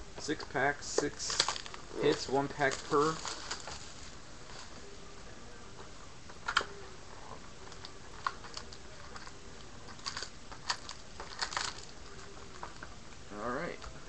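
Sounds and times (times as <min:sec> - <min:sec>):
foil packs crinkling: 0:01.3 - 0:04.1, 0:09.9 - 0:12.8.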